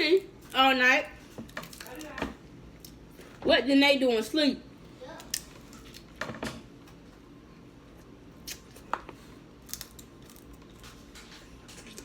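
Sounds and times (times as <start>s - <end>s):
crab shells cracking: 9.6s - 10.7s.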